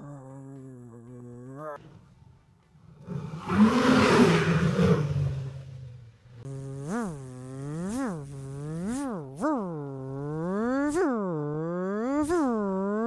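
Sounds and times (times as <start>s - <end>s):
buzzing sound effect: 6.4s - 13.0s.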